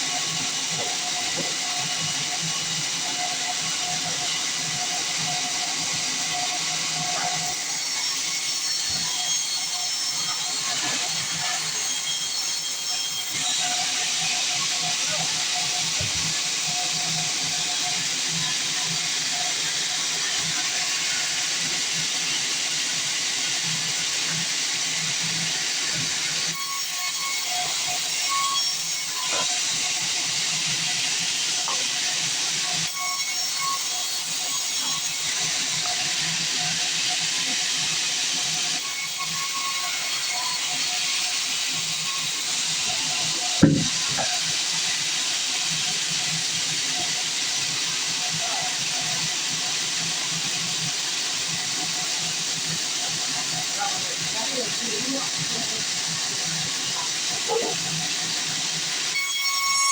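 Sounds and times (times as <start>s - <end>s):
band saw cutting log: 0.0s - 59.9s
band saw hissing: 40.0s - 49.9s
sharp knock: 43.6s - 44.1s.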